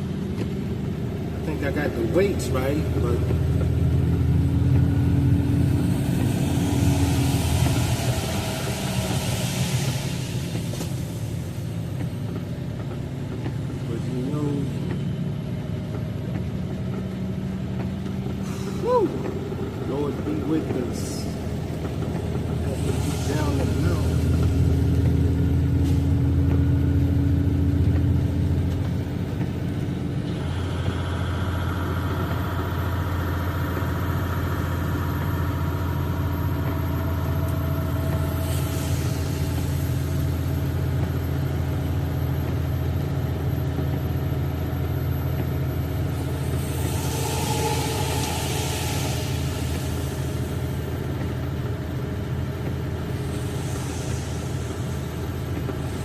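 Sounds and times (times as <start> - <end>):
truck diesel engine running: 0.0 - 56.0
brief air hiss: 46.2 - 51.0, 53.2 - 56.0.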